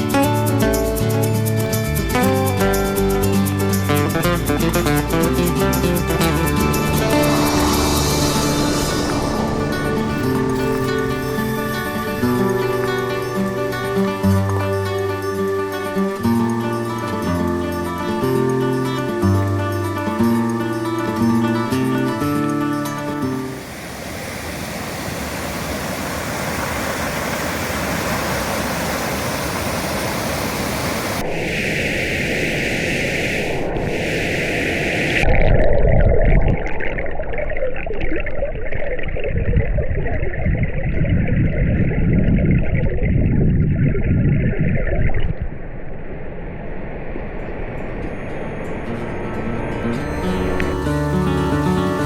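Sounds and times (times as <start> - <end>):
mountain stream rushing: 0.0 - 35.3.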